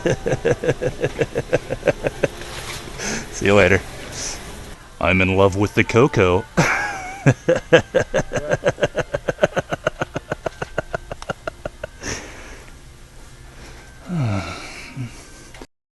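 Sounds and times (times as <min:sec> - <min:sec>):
person laughing: 0:00.0 - 0:03.4, 0:06.6 - 0:12.4
voiced sigh: 0:13.9 - 0:15.6.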